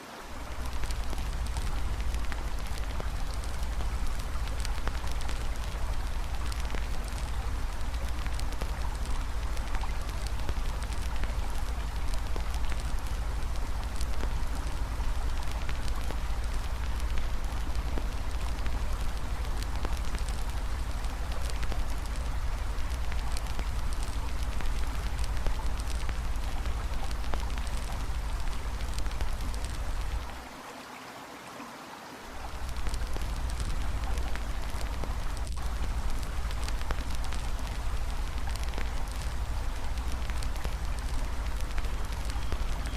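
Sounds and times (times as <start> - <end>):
river water rushing: 0.0 - 23.3, 29.5 - 36.0
campfire crackling and popping: 0.3 - 30.5, 32.4 - 42.9.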